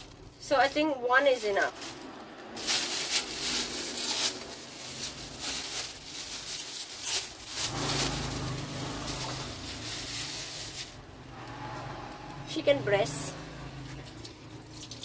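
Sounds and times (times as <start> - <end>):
rustling food preparation handling: 0.0 - 11.4.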